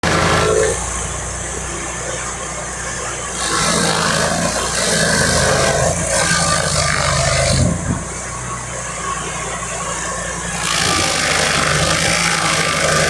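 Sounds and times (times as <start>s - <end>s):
stump grinder engine running: 0.0s - 13.0s.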